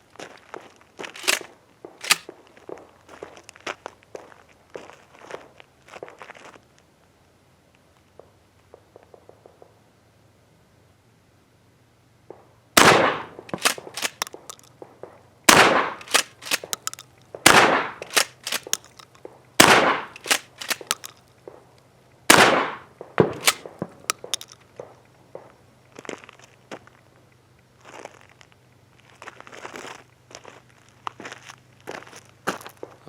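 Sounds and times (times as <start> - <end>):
shotgun pump clacks: 1.1 - 2.3, 13.0 - 14.7, 15.5 - 21.3, 22.6 - 24.7
shotgun shots: 1.2 - 1.4, 2.0 - 2.3, 12.8 - 14.6, 15.5 - 21.1, 22.3 - 24.5.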